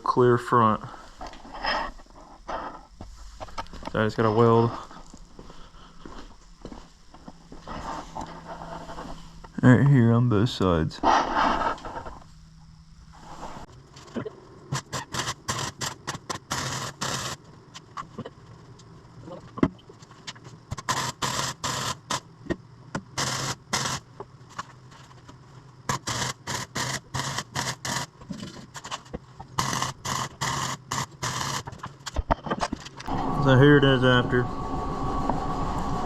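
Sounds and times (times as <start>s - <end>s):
steady low hum: 0.0s - 36.0s
welding arc crackling: 14.7s - 17.5s, 20.7s - 22.3s, 23.1s - 24.1s, 25.9s - 28.9s, 29.5s - 31.9s.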